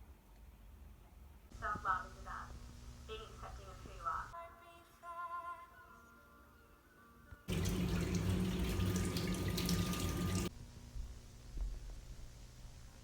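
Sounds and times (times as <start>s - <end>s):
tap water gushing: 7.5s - 10.5s.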